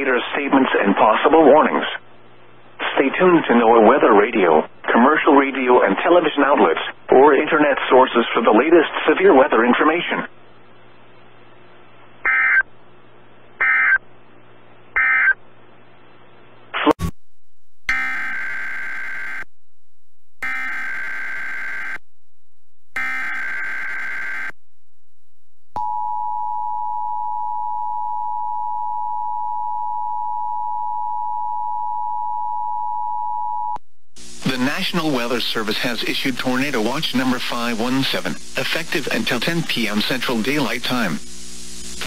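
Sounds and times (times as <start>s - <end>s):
buzzy digital data bursts: 17.9s - 19.5s, 20.4s - 22.0s, 23.0s - 24.6s, 34.2s - 42.0s
steady alarm tone: 17.9s - 19.5s, 20.4s - 22.0s, 23.0s - 24.5s.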